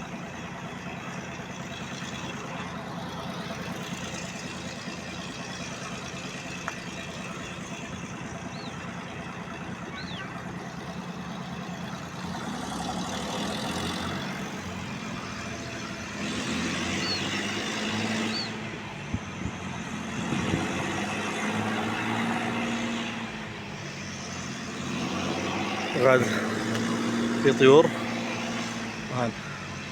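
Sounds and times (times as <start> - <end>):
faint high chirps: 9.9 - 10.5.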